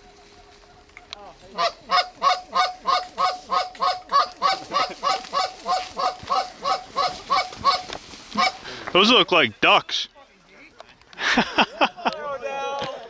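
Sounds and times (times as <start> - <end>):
goose call honks: 1.5 - 8.7.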